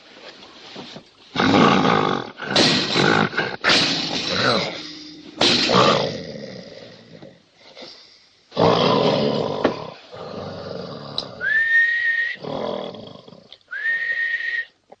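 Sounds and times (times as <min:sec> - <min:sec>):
person snoring loudly: 0:08.6 - 0:11.6, 0:12.3 - 0:13.6
sliding whistle: 0:11.4 - 0:12.4, 0:13.7 - 0:14.8.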